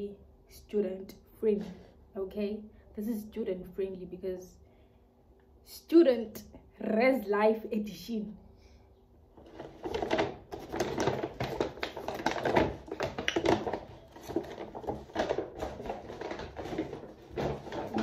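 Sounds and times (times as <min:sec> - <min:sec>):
plastic bag crinkling: 0:09.4 - 0:18.0.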